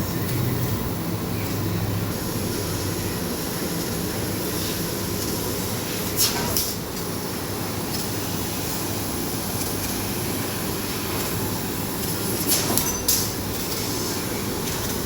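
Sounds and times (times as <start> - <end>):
machine rumble and hiss: 0.0 - 15.0
sharp hissing clicks: 6.0 - 6.8, 12.4 - 15.0.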